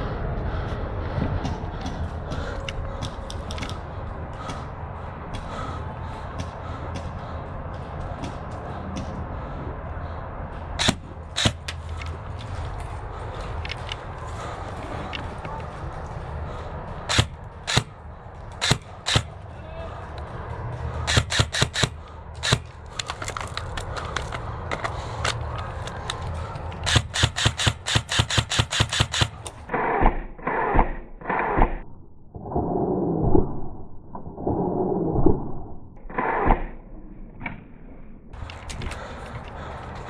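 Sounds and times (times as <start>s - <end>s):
airsoft guns firing: 10.8s - 11.9s, 17.1s - 19.6s, 21.0s - 23.6s, 26.8s - 29.8s.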